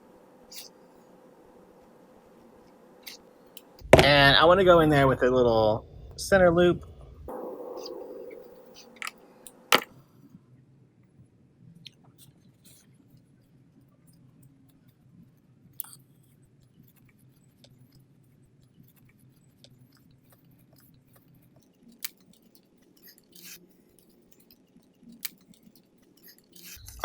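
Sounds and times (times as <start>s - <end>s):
low hum: 3.8s - 9.9s
small clicks and rustles: 11.8s - 27.0s.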